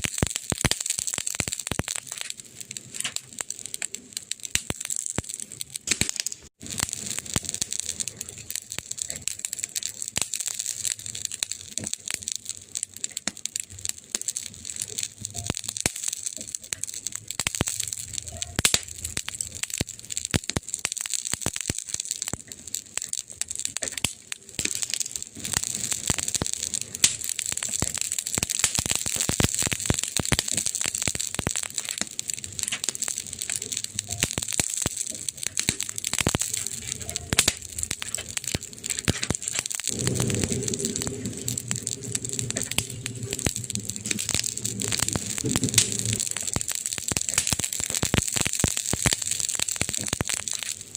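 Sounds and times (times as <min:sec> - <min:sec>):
wood fire crackling: 0:00.0 - 0:50.9.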